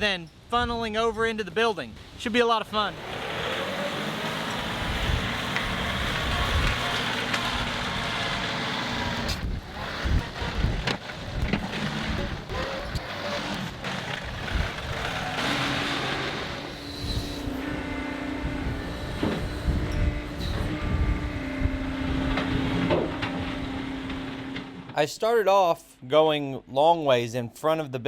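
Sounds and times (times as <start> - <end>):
diesel engine under load: 2.8 - 25.0.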